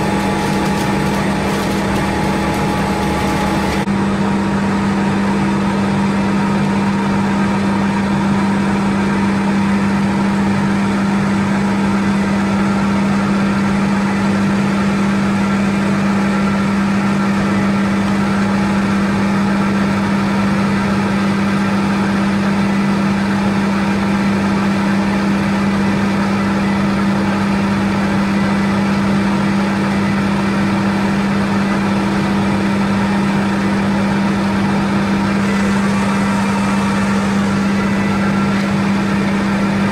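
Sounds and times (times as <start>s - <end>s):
rushing noise: 0.0s - 3.9s
machinery humming: 0.0s - 4.8s, 21.7s - 39.9s.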